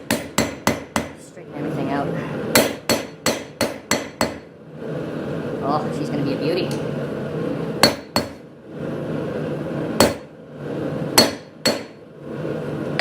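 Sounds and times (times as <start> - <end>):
hammer striking steel on anvil: 0.0 - 1.2, 2.5 - 4.5, 7.8 - 8.4, 10.0 - 10.3, 11.2 - 12.0.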